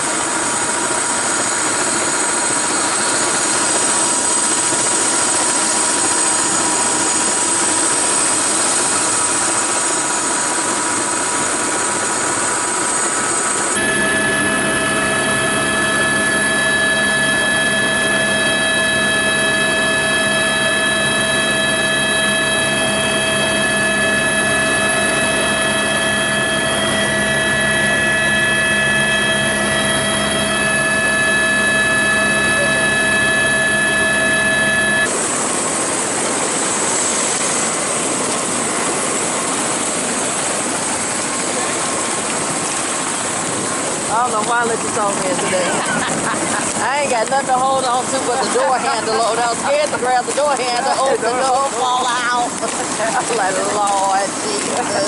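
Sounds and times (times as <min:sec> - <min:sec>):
helicopter engine and rotor drone: 0:00.0 - 0:55.0.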